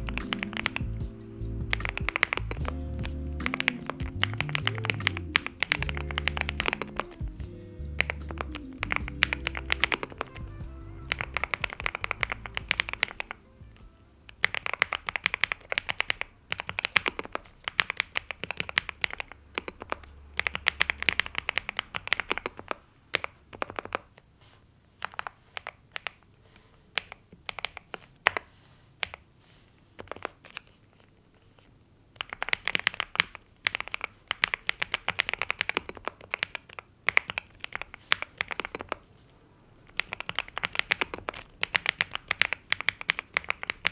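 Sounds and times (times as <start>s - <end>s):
typing on mechanical keyboard: 1.7s - 7.4s, 11.1s - 13.4s, 14.3s - 24.1s, 27.0s - 29.2s, 32.2s - 39.0s, 39.9s - 43.9s.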